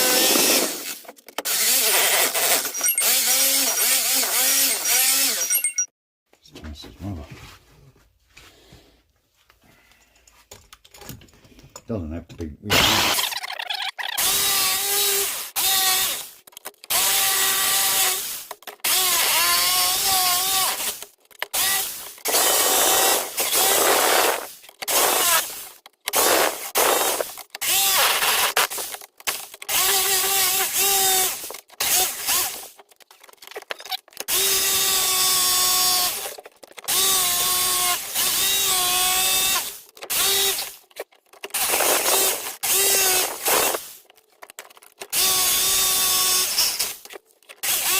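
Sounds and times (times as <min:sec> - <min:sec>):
electric drill boring into wood: 0:00.0 - 0:05.6, 0:12.7 - 0:13.4, 0:14.0 - 0:32.7, 0:34.2 - 0:40.8, 0:41.5 - 0:44.0, 0:45.1 - 0:47.9.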